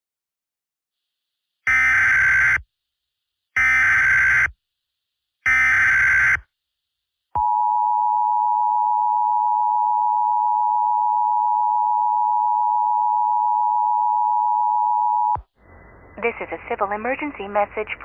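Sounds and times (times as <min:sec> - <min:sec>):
steady two-tone beep: 0:07.4 - 0:15.4.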